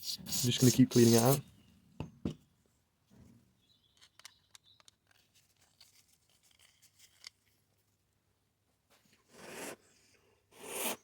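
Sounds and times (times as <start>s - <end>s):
small tool clicks and scraping: 3.9s - 7.4s.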